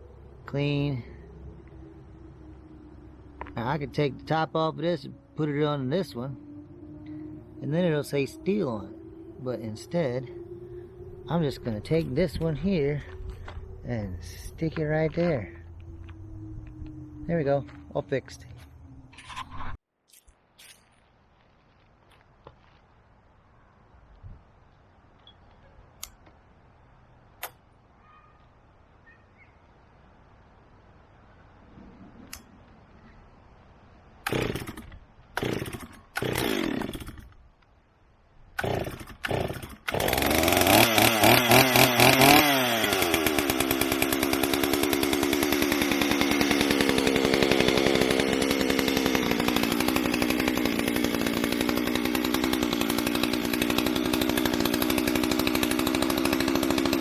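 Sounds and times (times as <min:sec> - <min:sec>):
chainsaw revving and idling: 0:00.3 - 0:18.5, 0:34.2 - 0:37.4, 0:38.6 - 0:57.0
chainsaw starter cord pulls: 0:34.2 - 0:37.4, 0:38.6 - 0:57.0.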